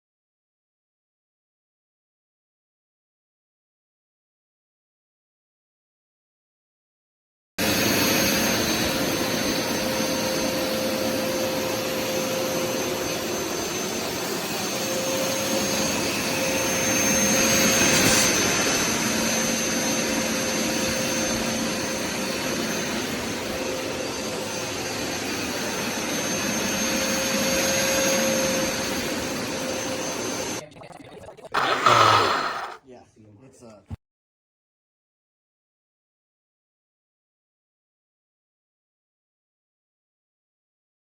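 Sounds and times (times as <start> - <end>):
carpet cleaner motor whining hum: 31.6 - 32.8.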